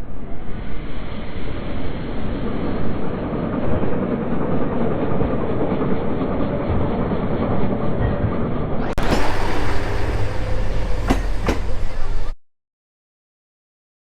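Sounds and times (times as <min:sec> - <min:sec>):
train wheels on rails: 0:09.0 - 0:12.4.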